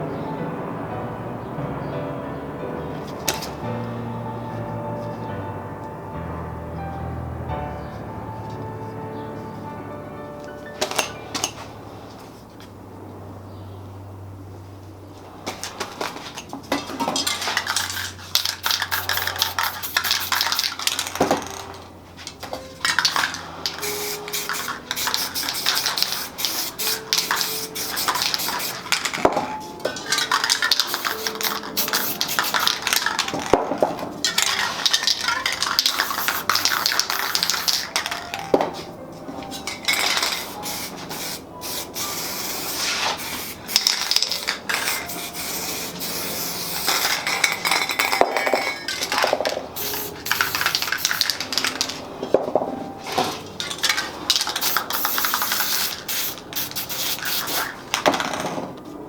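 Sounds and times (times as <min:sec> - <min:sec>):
faint music: 0:00.0 - 0:59.0
spray paint cans hissing: 0:03.0 - 0:03.9, 0:10.7 - 0:11.7, 0:15.5 - 0:58.8
metal cans and tools clinking: 0:10.7 - 0:11.7, 0:15.5 - 0:58.8.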